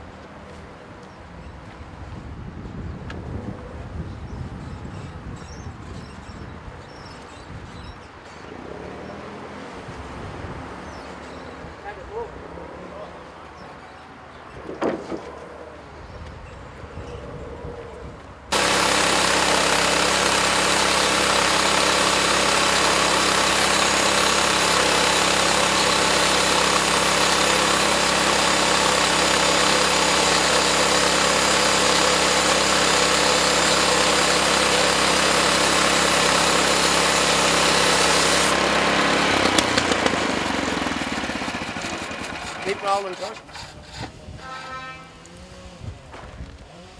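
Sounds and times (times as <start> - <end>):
saw noise: 18.5 - 46.0
sawmill engine drone: 18.5 - 46.9.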